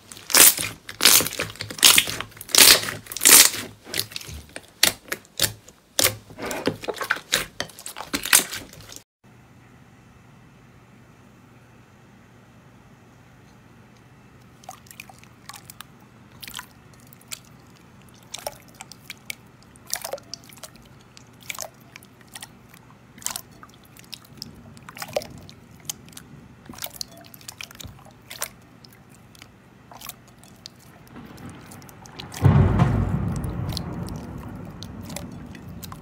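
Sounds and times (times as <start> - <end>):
slime popping and crackling: 0.0 - 9.0, 16.4 - 36.0.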